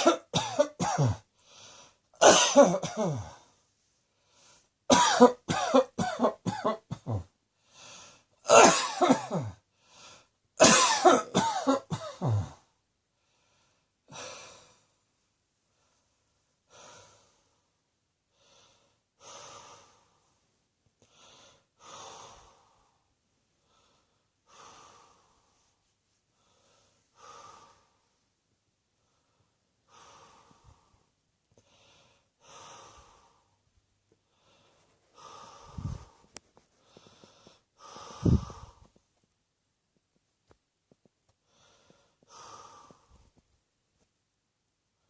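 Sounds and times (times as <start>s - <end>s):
person coughing: 0.0s - 1.2s, 2.2s - 3.4s, 4.9s - 7.3s, 8.5s - 9.6s, 10.6s - 12.6s
soft breaths: 1.2s - 2.1s, 3.2s - 4.8s, 7.5s - 8.4s, 9.6s - 10.4s, 12.5s - 44.1s.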